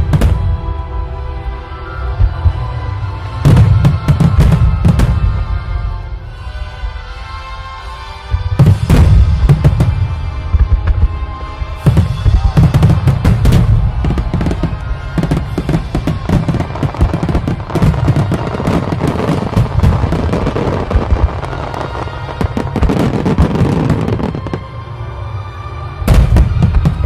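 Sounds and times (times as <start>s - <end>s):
fireworks banging and crackling: 0.0s - 0.7s, 2.2s - 5.9s, 8.4s - 24.8s, 26.0s - 27.0s
music: 0.0s - 27.0s.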